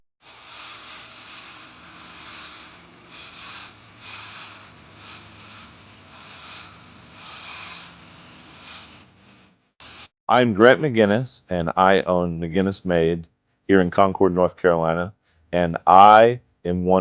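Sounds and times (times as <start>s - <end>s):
lathe tool cutting spinning wood: 0.2s - 10.1s.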